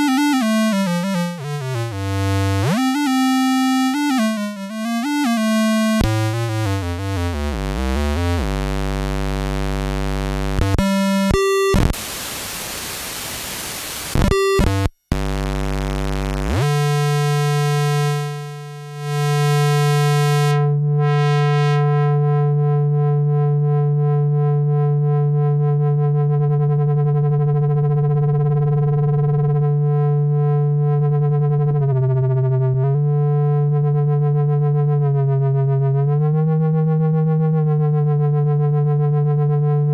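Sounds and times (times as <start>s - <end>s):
synthesizer notes: 0.0s - 12.1s, 13.4s - 23.1s
synthesizer white noise: 11.4s - 17.8s.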